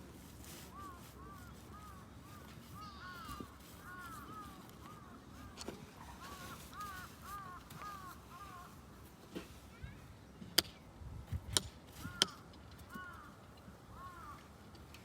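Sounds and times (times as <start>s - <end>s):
crow cawing: 0.7s - 8.8s, 12.0s - 14.5s.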